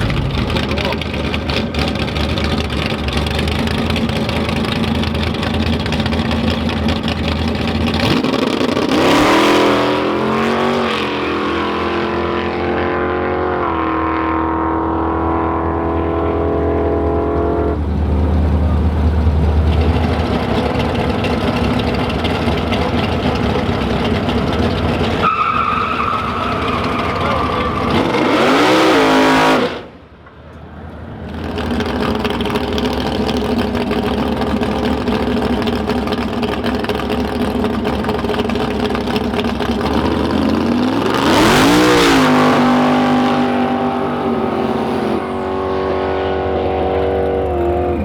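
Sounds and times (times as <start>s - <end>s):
drag car engines rumbling: 0.0s - 48.0s
car launching with revs rising: 8.0s - 17.8s, 25.0s - 30.0s, 39.8s - 48.0s.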